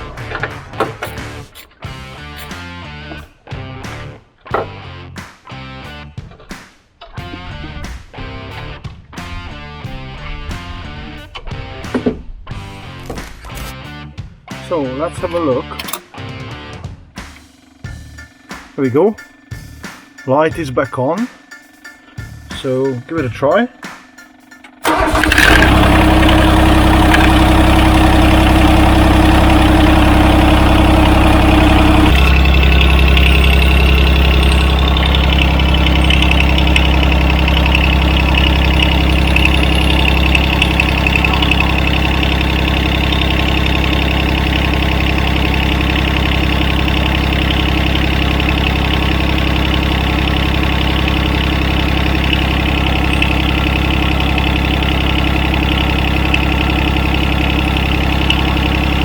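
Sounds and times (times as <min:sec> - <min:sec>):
tractor diesel engine idling: 0:24.8 - 0:59.0.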